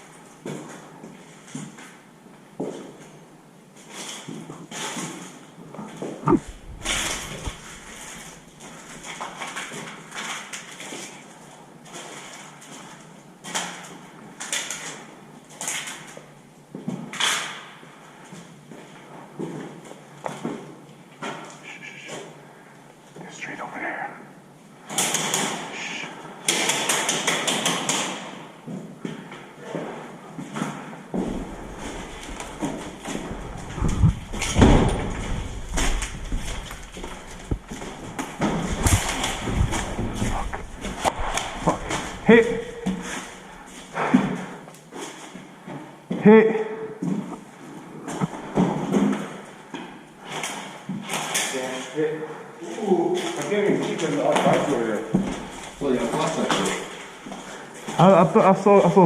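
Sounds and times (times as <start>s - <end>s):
knocks and thuds: 6.3s - 8.3s, 31.2s - 43.2s
gritty crunching footsteps: 6.3s - 9.4s, 31.1s - 43.9s.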